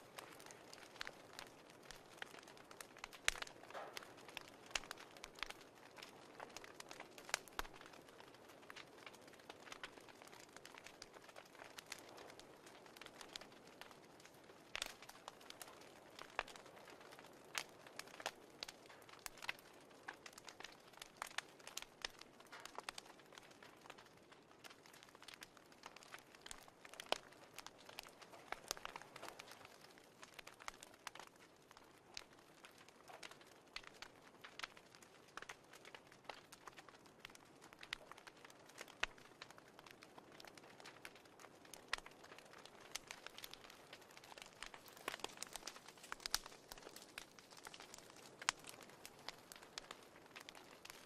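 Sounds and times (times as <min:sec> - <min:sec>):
wood fire crackling: 0:00.0 - 0:51.0.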